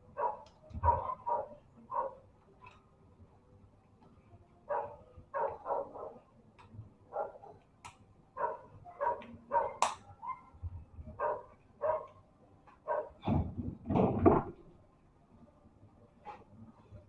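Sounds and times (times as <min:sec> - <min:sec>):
dog barking: 0:00.2 - 0:02.2, 0:04.7 - 0:06.2, 0:07.1 - 0:07.6, 0:08.4 - 0:12.2, 0:12.8 - 0:13.3.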